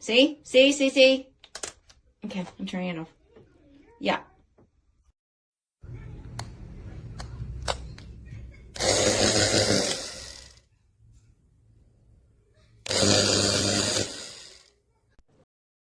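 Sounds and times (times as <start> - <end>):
hair dryer blowing: 8.8 - 10.5, 12.9 - 14.6.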